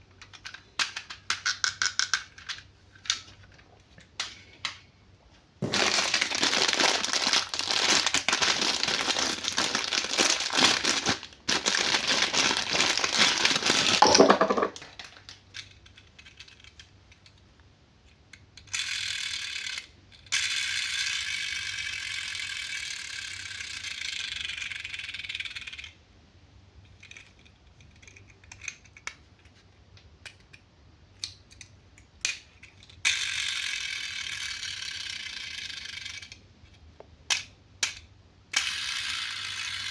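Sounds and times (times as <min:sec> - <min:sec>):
plastic parts clicking: 0:00.2 - 0:03.6, 0:05.6 - 0:17.4, 0:26.9 - 0:29.6
packaging crinkling and rattling: 0:05.6 - 0:15.4.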